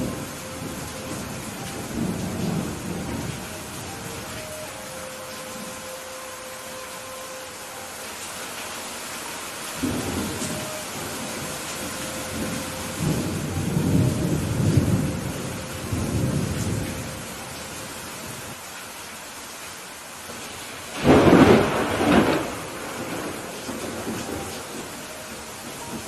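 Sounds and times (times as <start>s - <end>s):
low rolling thunder rumble: 0.0s - 5.8s, 9.8s - 18.5s, 20.9s - 26.0s
steady rain: 0.0s - 26.0s
loud thunderclap: 21.0s - 24.8s.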